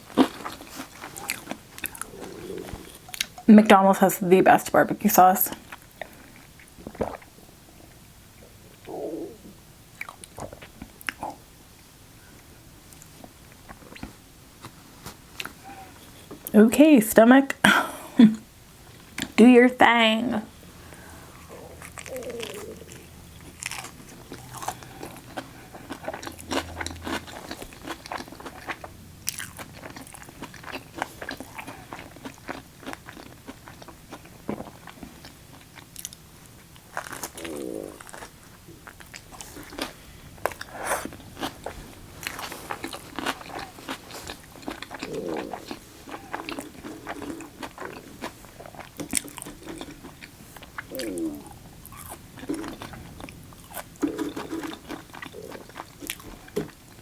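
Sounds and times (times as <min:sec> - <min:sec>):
wet chewing and crunching: 0:00.0 - 0:03.5, 0:10.0 - 0:11.4, 0:20.7 - 0:57.0
stomach gurgling: 0:01.1 - 0:03.4, 0:06.0 - 0:11.4, 0:21.3 - 0:27.5, 0:37.0 - 0:39.0, 0:42.7 - 0:56.8.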